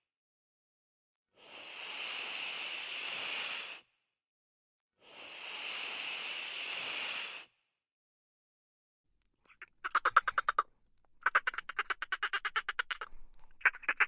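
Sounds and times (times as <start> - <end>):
hiss: 1.4 - 4.0, 5.0 - 7.6.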